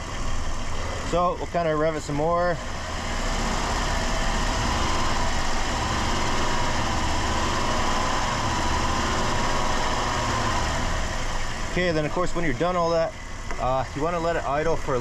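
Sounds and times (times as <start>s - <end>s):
car engine running at raised revs: 0.0s - 15.0s.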